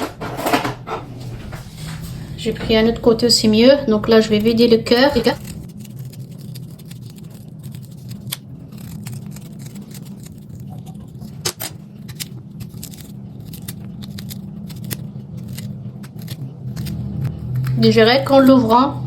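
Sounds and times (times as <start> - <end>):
steady low hum: 0.0 - 19.0
knife scraping turnip: 4.0 - 17.8.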